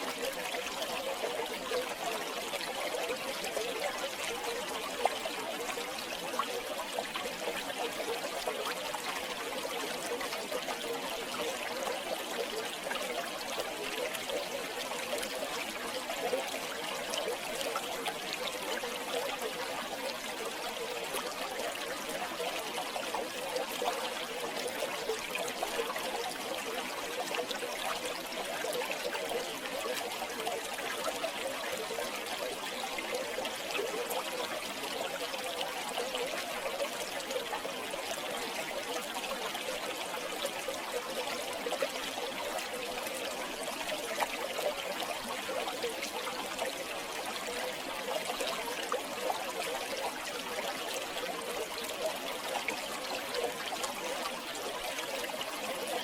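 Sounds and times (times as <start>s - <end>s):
river water flowing over stones: 0.0s - 56.0s.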